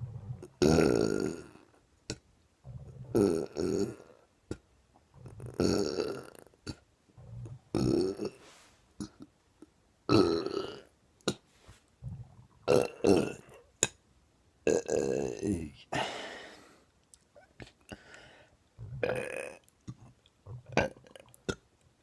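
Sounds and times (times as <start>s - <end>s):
man burping: 0.6s - 1.6s, 2.9s - 4.2s, 5.4s - 6.8s, 12.7s - 13.6s, 14.7s - 16.4s, 18.8s - 19.6s, 20.6s - 21.6s.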